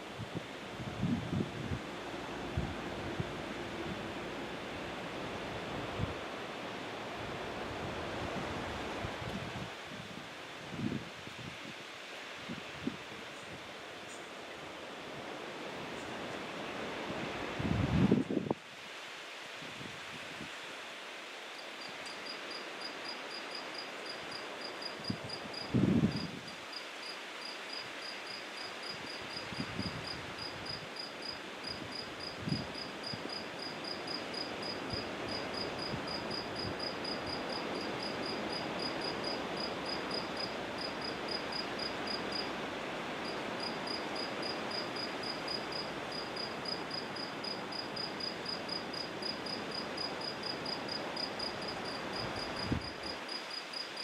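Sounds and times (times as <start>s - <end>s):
background hiss: 0.0s - 54.0s
cricket chirping: 21.5s - 54.0s.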